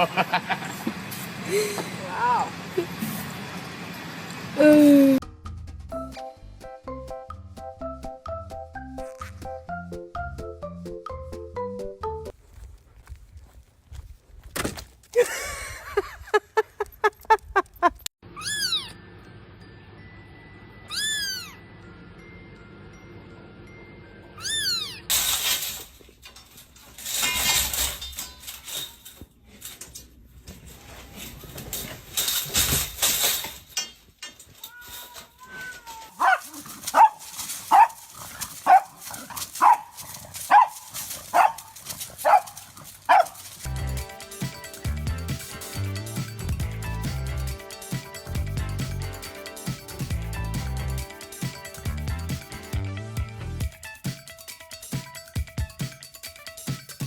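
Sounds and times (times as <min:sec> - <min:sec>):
music: 0:05.2 - 0:12.3, 0:19.0 - 0:24.5, 0:43.7 - 0:57.0
cat meowing: 0:18.3 - 0:19.0, 0:20.9 - 0:21.6, 0:24.4 - 0:25.1
short pet calls: 0:18.4 - 0:18.9, 0:20.9 - 0:21.6, 0:24.4 - 0:25.0.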